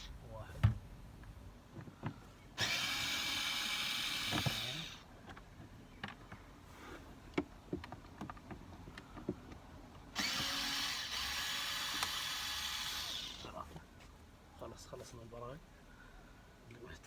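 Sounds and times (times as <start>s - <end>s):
cordless drill spinning out screws: 2.6s - 5.0s, 10.2s - 13.5s.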